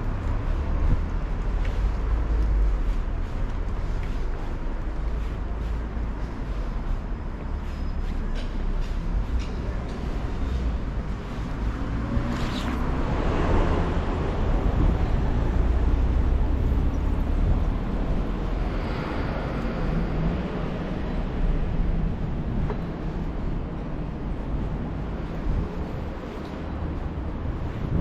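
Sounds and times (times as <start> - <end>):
street traffic rumble: 0.0 - 28.0
vehicles passing: 0.0 - 28.0.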